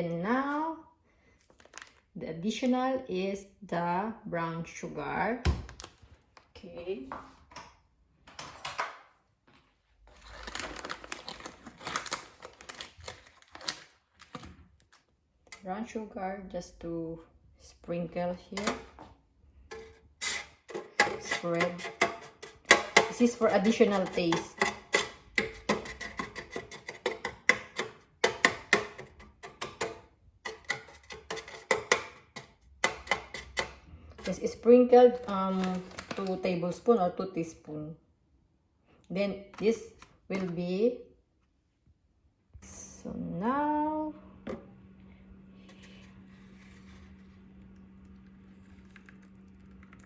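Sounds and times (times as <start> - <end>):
sugar bag crinkling: 1.4 - 2.1, 10.0 - 15.1, 35.1 - 36.5, 45.8 - 50.0.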